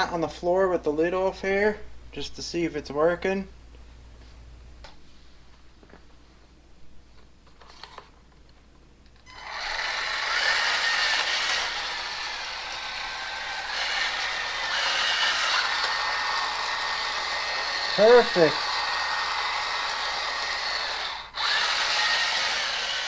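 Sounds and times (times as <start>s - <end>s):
electric motors whining: 9.3s - 23.0s.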